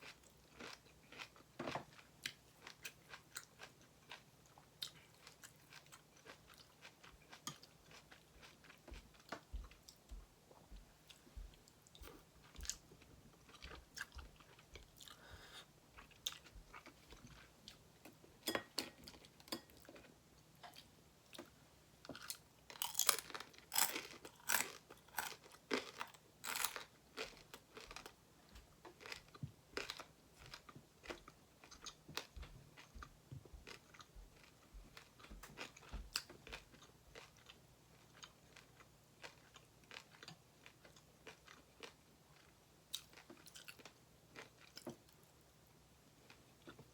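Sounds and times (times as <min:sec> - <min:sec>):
person chewing crunchy food: 0:00.0 - 0:10.1, 0:11.0 - 0:17.8, 0:22.1 - 0:28.2, 0:28.9 - 0:45.2.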